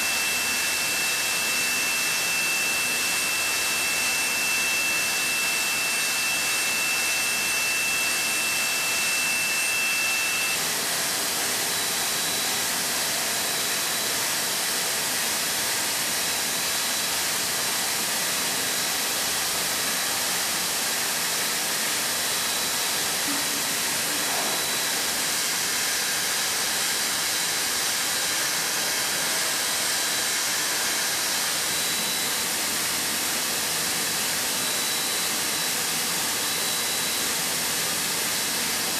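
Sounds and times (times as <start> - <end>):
high steady whine: 0.0 - 38.9
milling machine cutting noise: 18.8 - 38.9.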